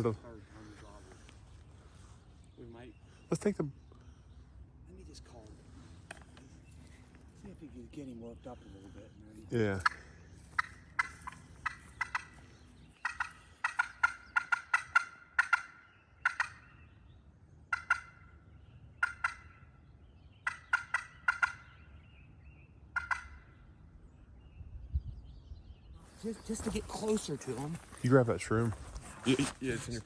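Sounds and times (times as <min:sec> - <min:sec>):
turkey call hen notes: 0:10.6 - 0:12.4, 0:13.0 - 0:16.7, 0:17.7 - 0:18.3, 0:19.0 - 0:19.7, 0:20.4 - 0:21.8, 0:23.0 - 0:23.4.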